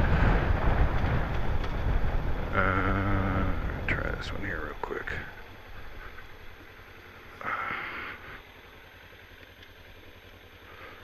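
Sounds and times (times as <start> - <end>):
rush of noise: 0.0 - 8.6
motorcycle engine idling: 0.0 - 11.0.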